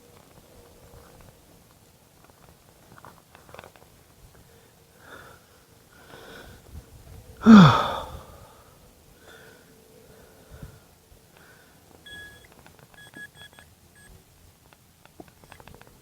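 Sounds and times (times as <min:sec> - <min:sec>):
person vocal burst: 0:07.4 - 0:08.2.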